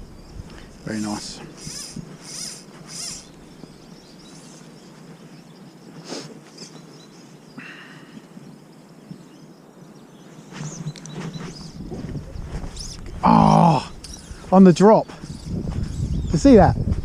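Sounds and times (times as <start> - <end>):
wind: 0.0 - 17.0
short hiss: 6.0 - 6.4.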